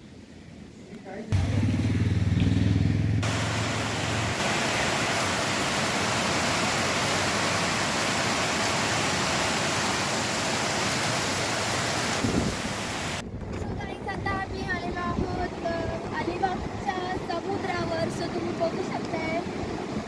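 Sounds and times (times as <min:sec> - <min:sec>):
vehicle engine hum: 0:01.3 - 0:04.4
heavy rain falling: 0:03.2 - 0:13.2.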